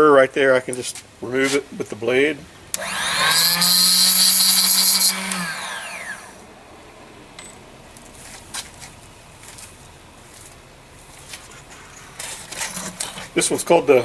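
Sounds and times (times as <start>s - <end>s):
chop saw grinding metal: 2.8s - 6.3s
saw spinning down whine: 2.8s - 6.4s.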